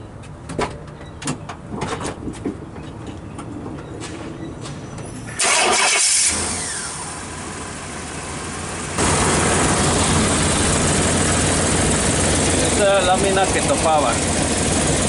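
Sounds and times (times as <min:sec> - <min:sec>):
truck engine starting and running: 0:03.8 - 0:15.0.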